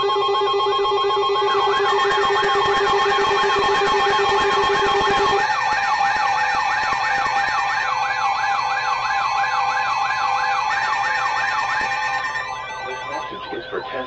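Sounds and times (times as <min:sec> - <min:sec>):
low pulsing beep: 0:00.0 - 0:05.4, 0:12.4 - 0:14.0
rising and falling siren tone: 0:00.0 - 0:14.0
steady alert tones: 0:00.0 - 0:14.0.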